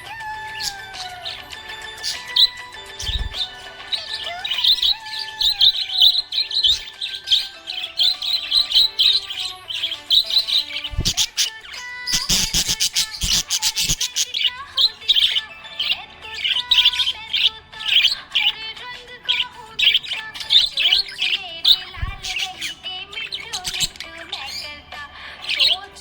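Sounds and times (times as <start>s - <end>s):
background music: 0.0s - 26.0s
parrots chirping: 0.0s - 26.0s.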